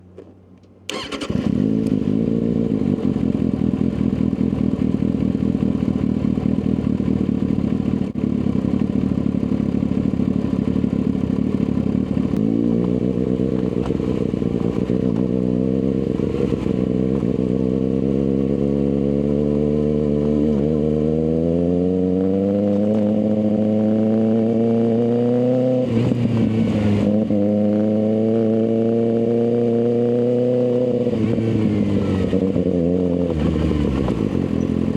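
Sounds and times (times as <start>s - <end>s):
motorcycle engine revving: 0.9s - 34.9s.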